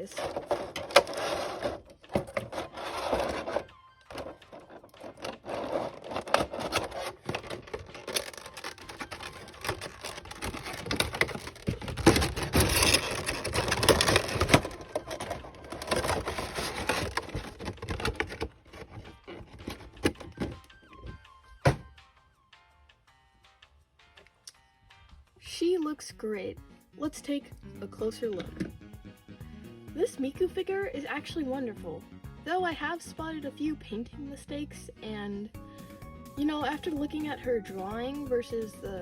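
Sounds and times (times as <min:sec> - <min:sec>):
packaging rustling and scraping: 0:00.0 - 0:21.2.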